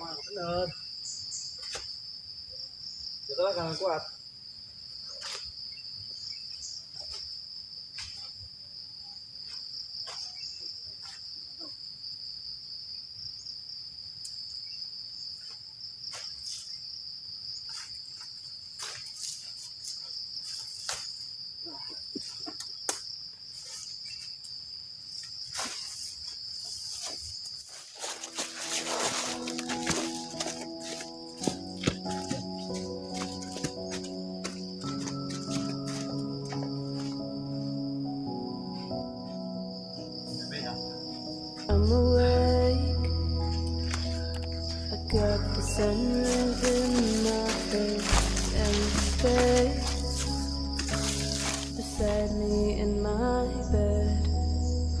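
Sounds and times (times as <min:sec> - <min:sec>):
crickets trilling: 0:00.0 - 0:55.0
snaps and rustles: 0:46.3 - 0:51.8.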